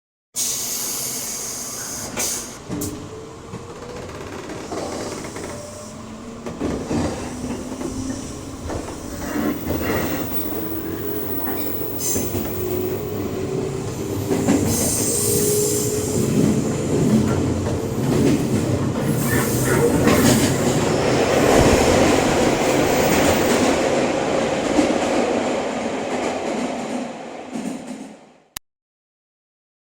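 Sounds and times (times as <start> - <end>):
wheels rumbling on rails: 2.6 - 28.2.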